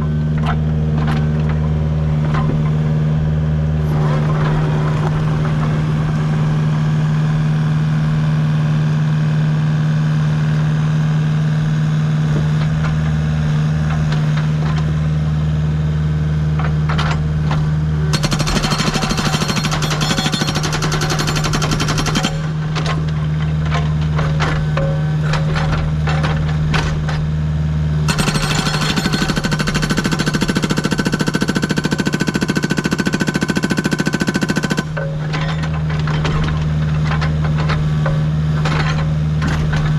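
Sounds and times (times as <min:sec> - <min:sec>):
diesel engine running: 0:00.0 - 0:39.9
hydraulic breaker pounding rock: 0:03.8 - 0:07.2, 0:16.5 - 0:39.9.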